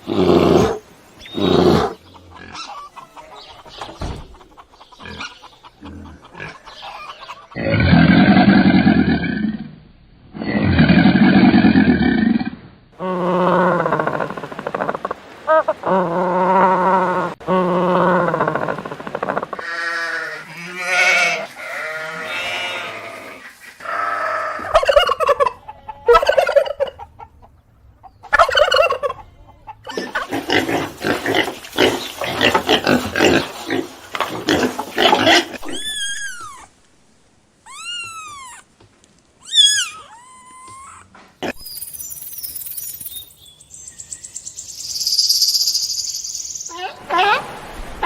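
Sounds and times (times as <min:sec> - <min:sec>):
poultry calls: 0:01.2 - 0:07.8, 0:19.6 - 0:33.5
turkey gobbling and clucking: 0:02.1 - 0:07.8, 0:24.4 - 0:30.4.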